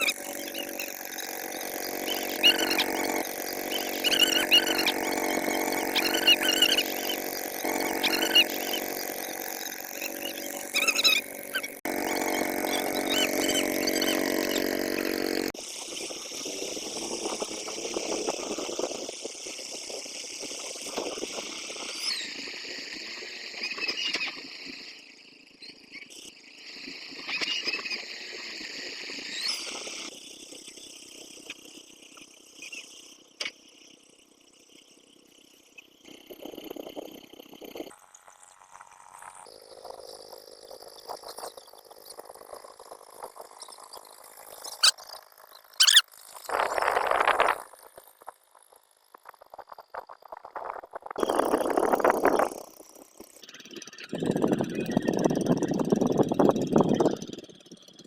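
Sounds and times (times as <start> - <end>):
high chirps: 0.0 - 15.5, 45.8 - 46.0
boat engine running: 0.0 - 23.5, 35.9 - 58.0.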